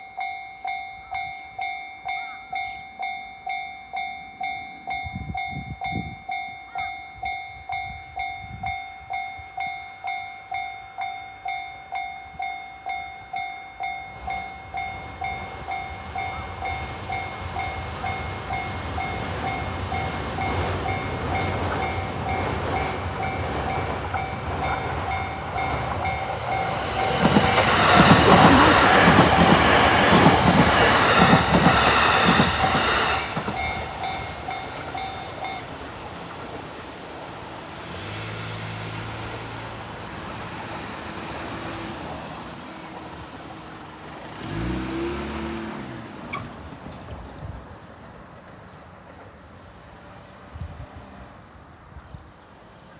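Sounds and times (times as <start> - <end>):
level-crossing bell dinging: 0.0 - 37.0
electric train passing: 0.0 - 52.9.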